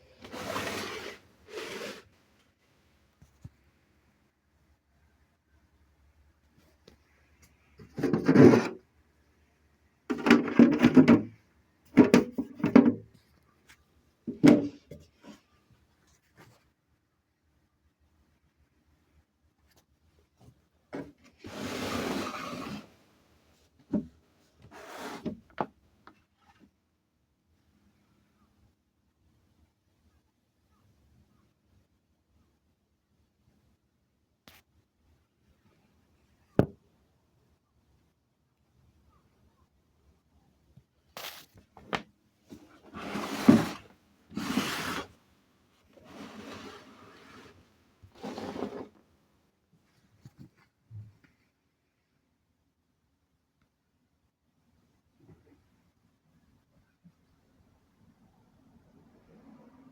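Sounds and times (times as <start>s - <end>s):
short rubbing scrapes: 0.2s - 2.1s, 21.4s - 22.9s, 42.8s - 45.2s, 46.0s - 49.0s.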